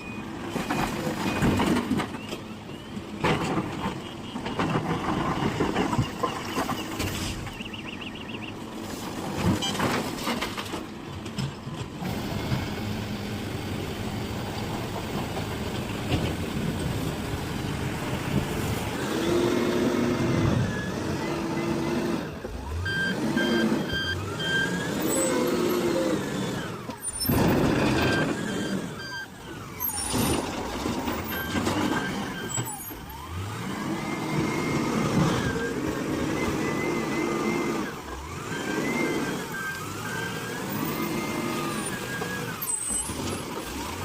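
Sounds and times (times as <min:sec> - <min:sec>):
diesel machinery running: 0:00.0 - 0:44.0.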